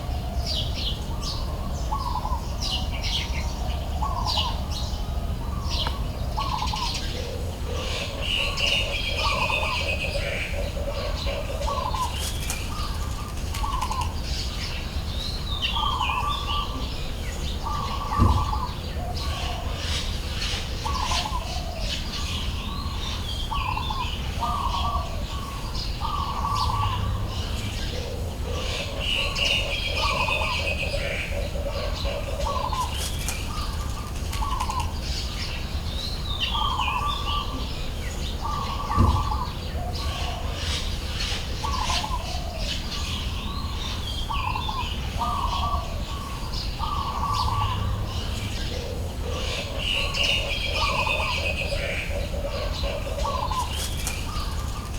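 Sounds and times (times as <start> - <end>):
birds calling: 0.0 - 54.9
knock: 18.2 - 18.6, 39.0 - 39.4.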